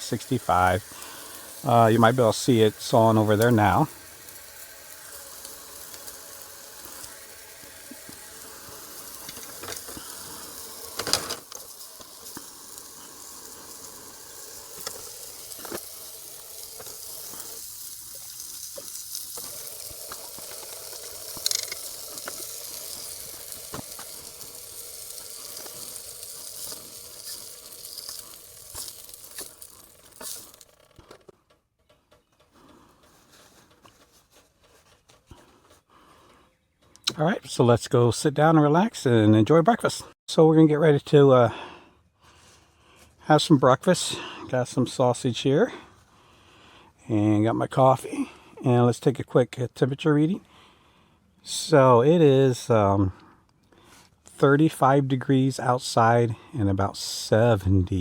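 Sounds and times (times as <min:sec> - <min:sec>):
sausages sizzling: 0:00.0 - 0:30.9.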